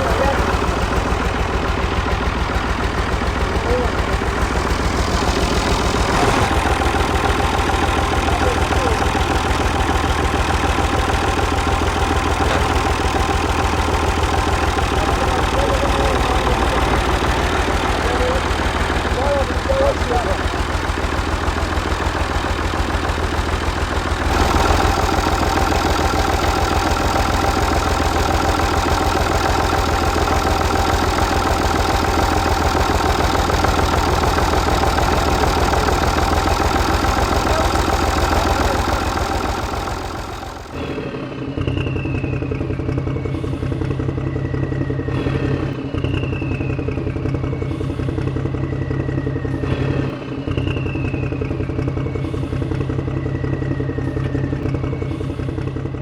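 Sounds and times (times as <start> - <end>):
low engine hum: 0.0 - 56.0
motor clattering: 0.0 - 56.0
high whistling tone: 40.8 - 55.6.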